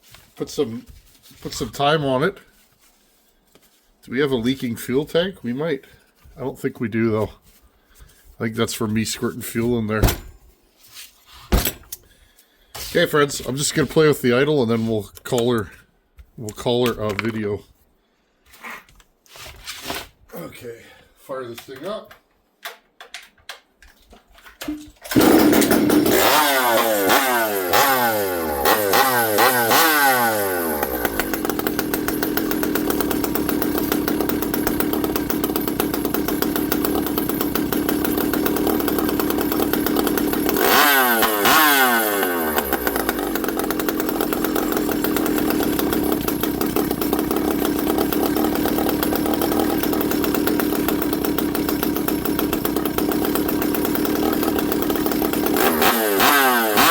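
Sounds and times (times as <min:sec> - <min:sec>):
chainsaw revving and idling: 0:25.1 - 0:56.9.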